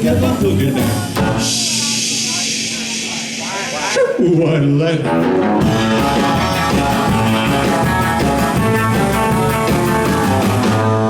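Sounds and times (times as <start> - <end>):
bass: 0.0 - 2.8, 4.9 - 11.0
drum kit: 0.0 - 3.8, 5.1 - 11.0
electric guitar: 5.0 - 11.0.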